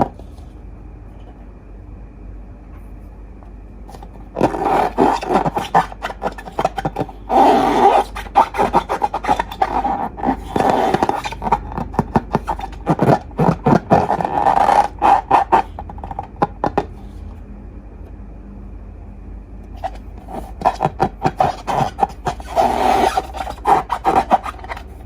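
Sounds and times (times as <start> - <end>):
slime squishing by hand: 3.9 - 17.2, 19.7 - 25.0.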